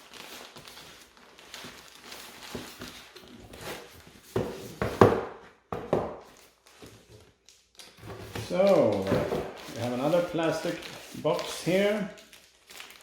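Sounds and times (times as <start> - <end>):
packaging rustling: 0.0 - 4.8, 6.2 - 13.0.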